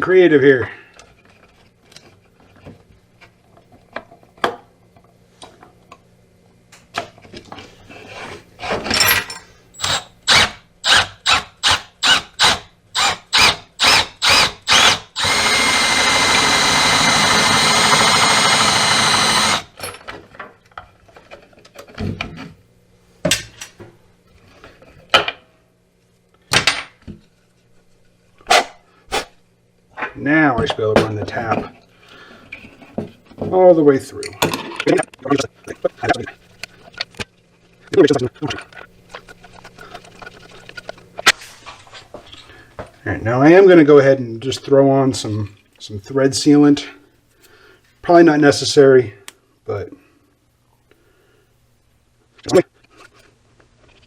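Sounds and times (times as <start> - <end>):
power drill whining: 9.8 - 19.8.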